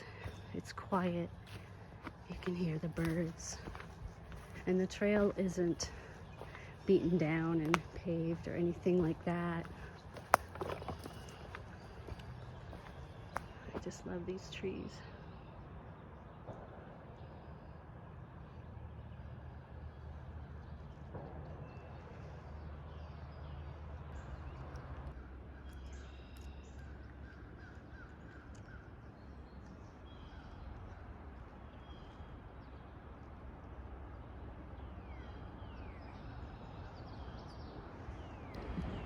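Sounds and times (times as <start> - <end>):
birds calling and chirping: 0.0 - 17.6
steady low rumble: 0.0 - 22.8.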